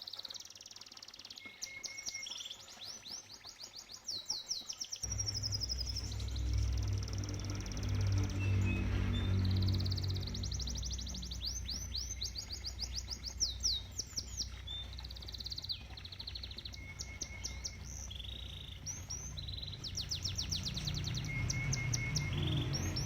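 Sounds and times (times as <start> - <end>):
canary singing trills: 3.9 - 23.0
steady low rumble: 5.1 - 23.0.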